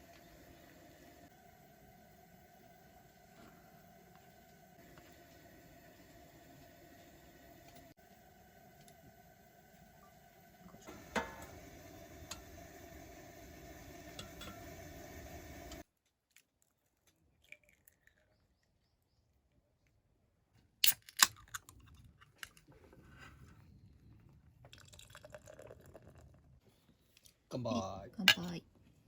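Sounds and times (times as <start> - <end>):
small objects clicking and knocking: 20.8 - 22.8.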